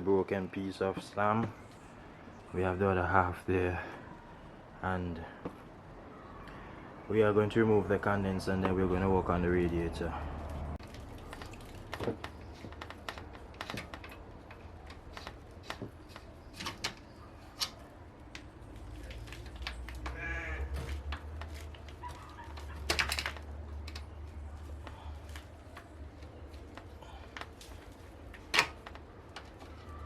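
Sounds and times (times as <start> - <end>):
hand tools clicking and knocking: 10.8 - 18.5, 19.1 - 30.0.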